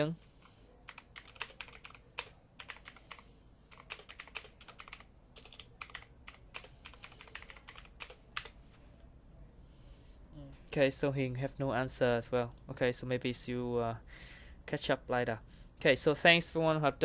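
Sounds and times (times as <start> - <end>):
typing on computer keyboard: 0.8 - 8.6.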